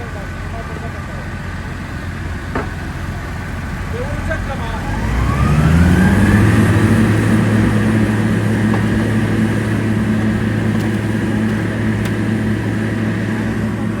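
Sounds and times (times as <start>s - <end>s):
diesel construction machinery drone: 0.0s - 14.0s.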